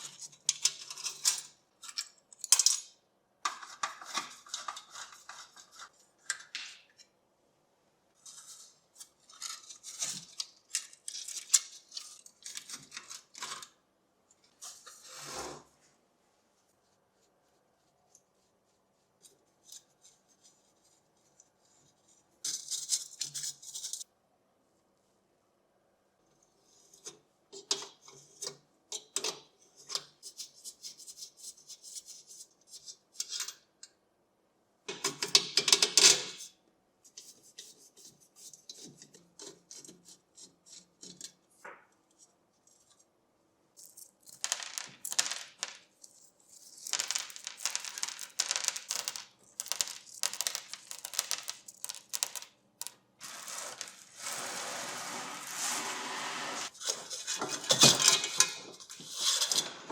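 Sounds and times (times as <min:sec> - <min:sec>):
metal parts clicking and tapping: 0:00.4 - 0:04.8, 0:46.8 - 0:53.0
scraping and rubbing on metal: 0:03.6 - 0:06.2, 0:08.2 - 0:10.4, 0:14.6 - 0:15.7, 0:53.2 - 0:59.9.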